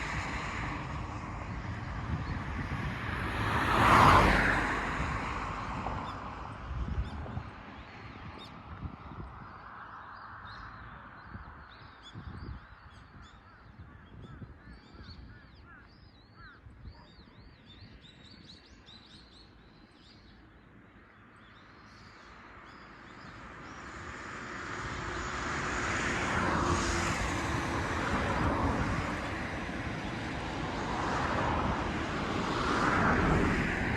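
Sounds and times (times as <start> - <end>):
vehicle passing: 0.0 - 6.6, 23.8 - 33.9
vehicle approaching: 24.0 - 33.9.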